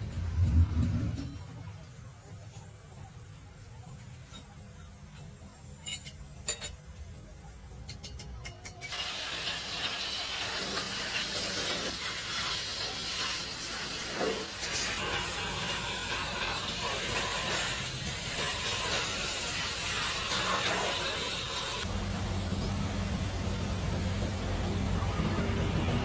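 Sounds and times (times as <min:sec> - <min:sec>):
low hum: 0:00.0 - 0:02.4, 0:21.9 - 0:26.0
pressurised jet hissing: 0:08.9 - 0:26.0.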